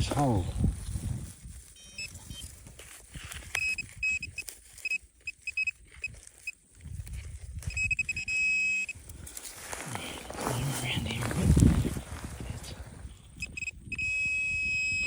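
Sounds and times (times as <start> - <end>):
scuffing and handling noise: 0.5 - 7.9, 9.2 - 12.6
metal detector beeping: 1.7 - 2.5, 3.4 - 6.6, 7.6 - 9.1, 13.4 - 15.0.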